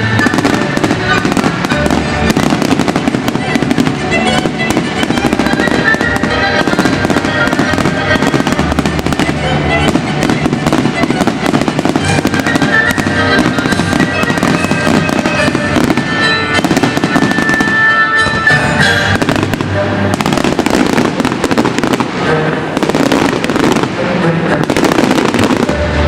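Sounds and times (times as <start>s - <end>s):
fireworks bursting and crackling: 0.0s - 26.0s
music: 0.0s - 26.0s.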